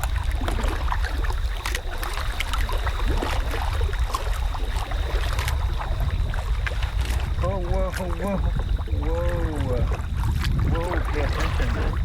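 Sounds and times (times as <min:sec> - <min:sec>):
paddle splashes and drips: 0:00.0 - 0:12.0
wind buffeting microphone: 0:00.0 - 0:12.0.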